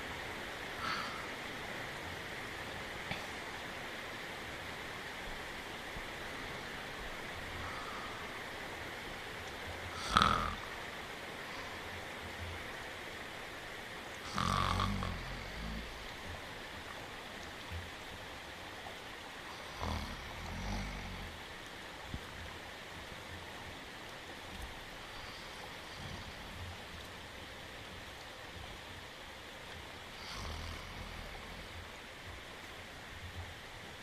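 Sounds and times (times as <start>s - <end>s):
steady rain hiss: 0.0s - 34.0s
cartoon dog snoring: 10.0s - 10.6s.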